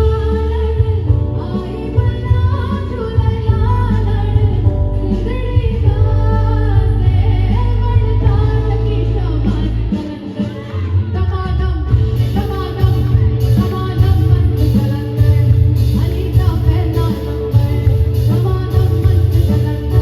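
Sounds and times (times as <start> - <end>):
person singing: 0.0 - 20.0
music with heavy bass and beat: 11.9 - 20.0.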